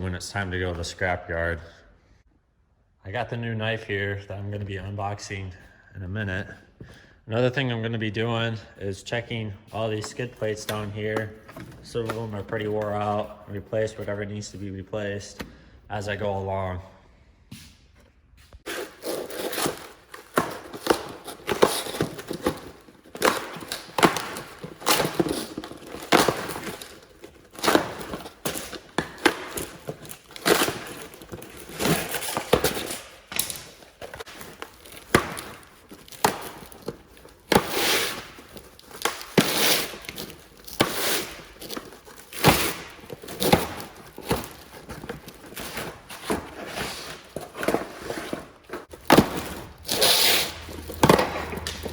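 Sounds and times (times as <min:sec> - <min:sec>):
knocks and clatter of shop work: 0:09.7 - 0:14.1, 0:17.5 - 0:51.9.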